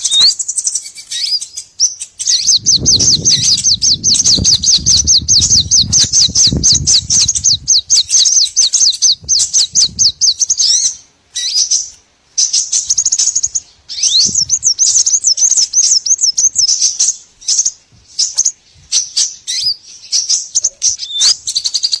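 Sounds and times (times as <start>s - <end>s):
songbirds chirping rapidly: 0.0s - 22.0s
low rumble: 2.6s - 7.9s.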